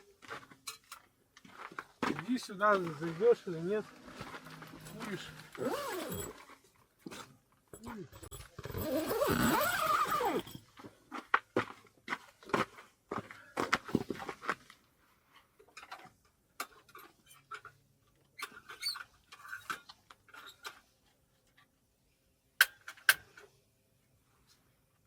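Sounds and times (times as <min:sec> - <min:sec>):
rustling of things handled: 0:00.0 - 0:16.2.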